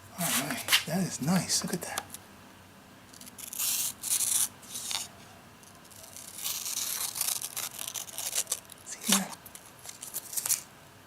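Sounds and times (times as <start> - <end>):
knife blade slicing paper: 3.2 - 5.1, 5.9 - 10.7.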